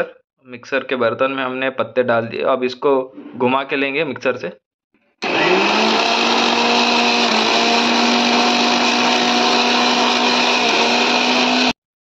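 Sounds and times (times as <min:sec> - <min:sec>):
mixer grinder motor whine: 0:05.2 - 0:11.8.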